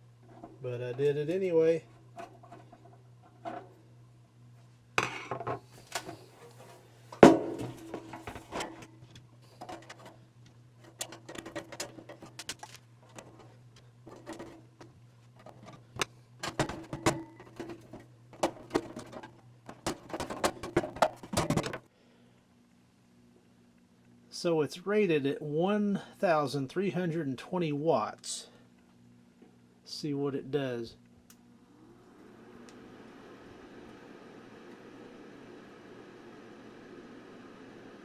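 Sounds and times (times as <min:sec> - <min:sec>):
metal clicks and rattles: 0:10.8 - 0:21.8.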